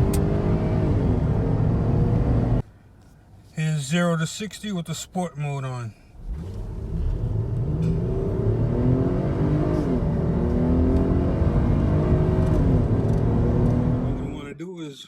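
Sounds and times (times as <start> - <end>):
car engine accelerating hard: 0.0 - 2.6, 6.2 - 14.5.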